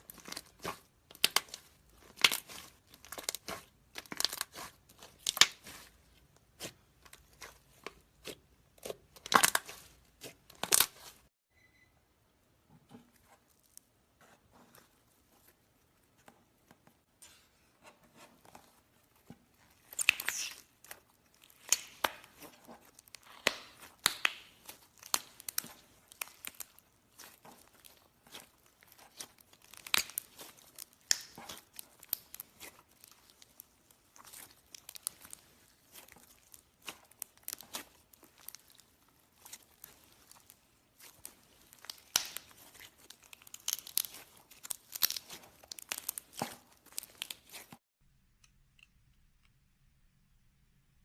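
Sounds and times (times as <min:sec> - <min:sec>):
slime crackling and popping: 0:00.0 - 0:11.3, 0:19.6 - 0:47.8.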